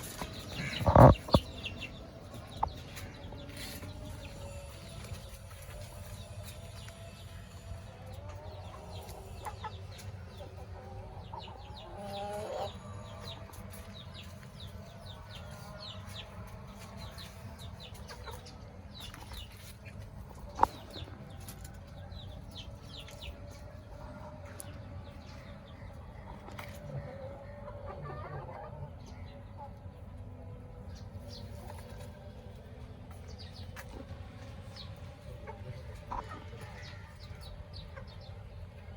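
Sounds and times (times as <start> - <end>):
chickens clucking: 0.0 - 38.9
drawn-out chicken call: 11.8 - 13.2.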